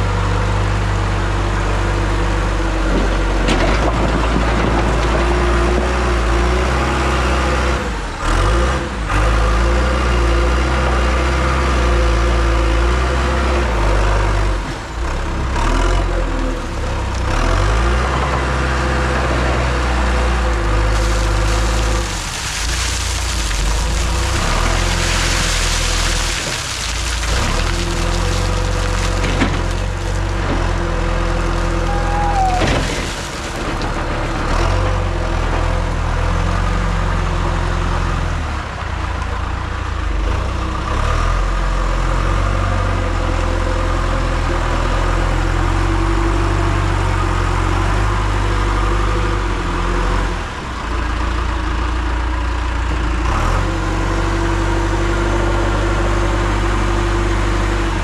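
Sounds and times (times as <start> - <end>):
backhoe diesel engine running: 0.0 - 58.0
crackling crunching noise: 20.0 - 35.0.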